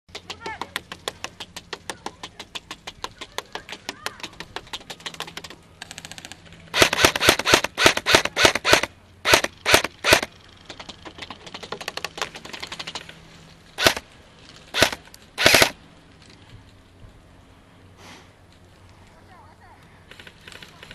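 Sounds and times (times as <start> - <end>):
airsoft guns firing: 2.3 - 10.3, 13.8 - 14.0, 14.7 - 15.8.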